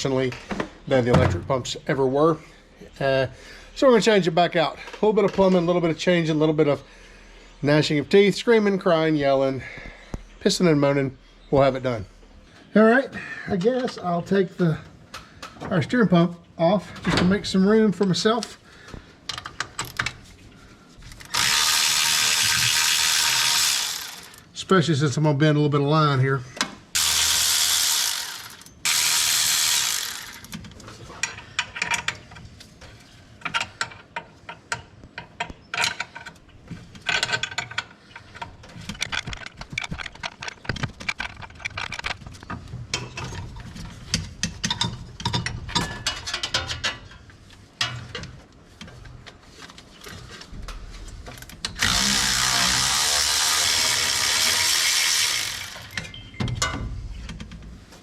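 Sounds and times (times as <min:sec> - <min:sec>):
hand ratchet clicking: 0:21.2 - 0:24.4, 0:27.0 - 0:30.6, 0:51.7 - 0:56.2
power tool bursts: 0:21.2 - 0:24.5, 0:27.0 - 0:30.5, 0:51.8 - 0:56.2.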